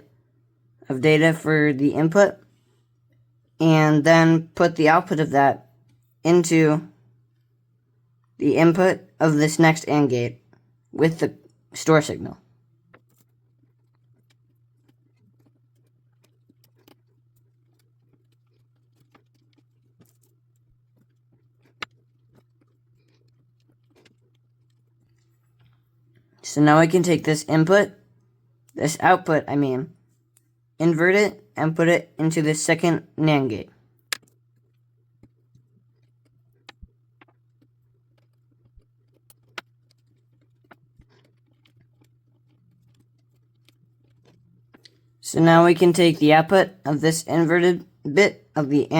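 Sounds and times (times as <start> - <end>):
low steady hum: 0.0 - 48.9
wires clicking into breadboard: 34.0 - 45.0.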